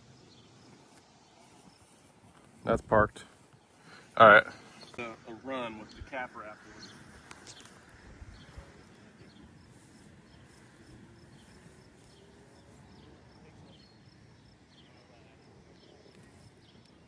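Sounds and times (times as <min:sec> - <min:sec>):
low rumble of wind: 0:05.8 - 0:14.8.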